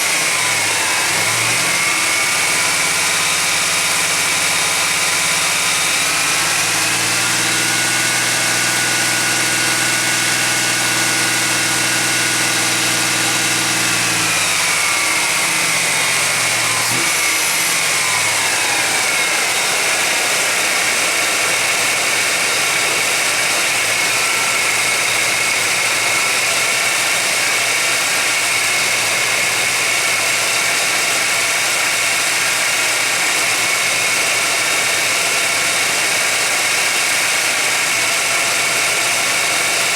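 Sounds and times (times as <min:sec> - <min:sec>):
car engine idling: 0:00.1 - 0:06.7.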